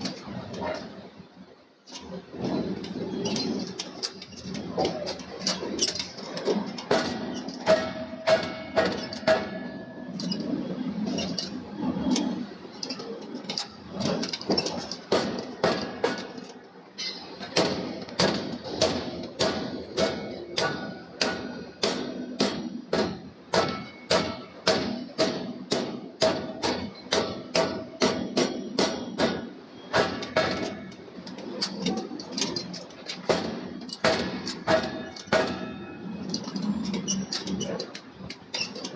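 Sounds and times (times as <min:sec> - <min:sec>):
hammer striking steel: 0:06.8 - 0:09.9, 0:17.1 - 0:31.0, 0:31.6 - 0:37.9.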